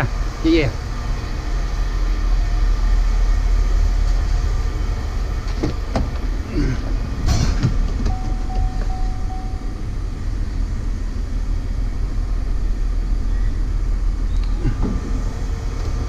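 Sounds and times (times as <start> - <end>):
low engine rumble: 0.0 - 16.0
short quick beeps: 8.1 - 9.7.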